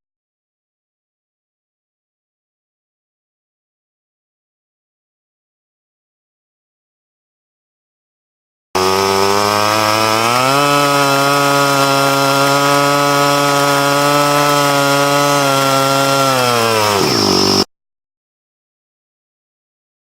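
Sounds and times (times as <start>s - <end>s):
small engine running: 8.8s - 17.7s.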